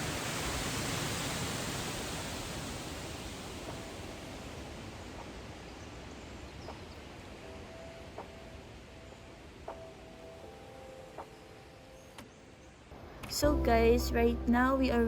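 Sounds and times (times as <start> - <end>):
steady rushing noise: 0.0 - 11.4.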